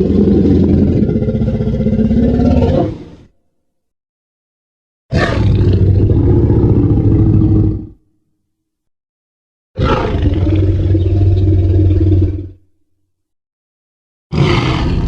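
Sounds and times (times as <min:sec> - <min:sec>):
deep dinosaur roar: 0:00.0 - 0:03.3, 0:05.1 - 0:08.0, 0:09.8 - 0:12.6, 0:14.3 - 0:15.0.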